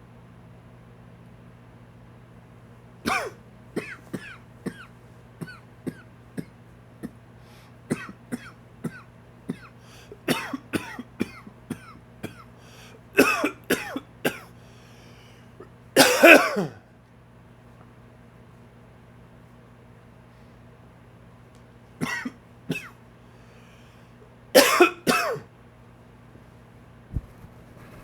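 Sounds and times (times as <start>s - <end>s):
man's dry wheezy cough: 3.1s - 7.2s, 7.9s - 12.5s, 13.2s - 14.5s, 16.0s - 16.8s, 22.0s - 23.0s, 24.6s - 25.5s.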